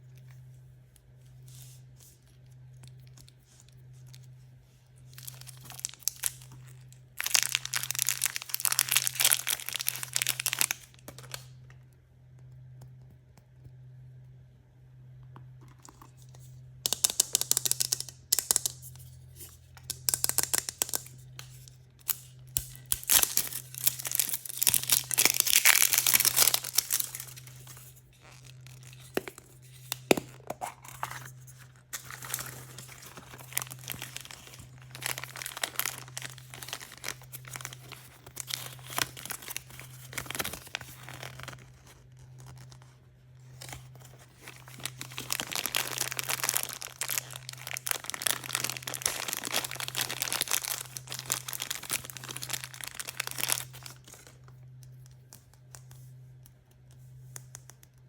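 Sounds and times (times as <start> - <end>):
faint low hum: 0.0 - 58.0
wrappers tearing and crinkling: 5.1 - 11.5, 20.0 - 42.9, 43.5 - 54.4.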